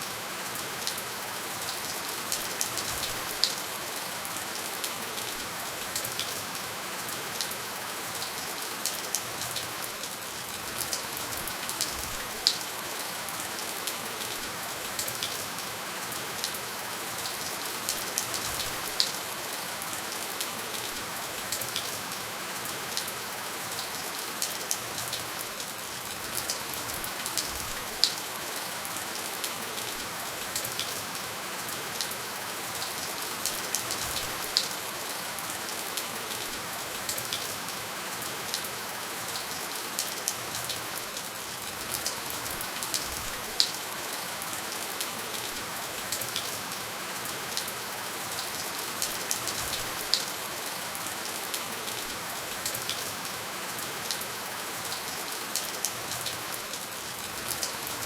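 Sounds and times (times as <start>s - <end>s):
steady rainfall: 0.0s - 58.0s.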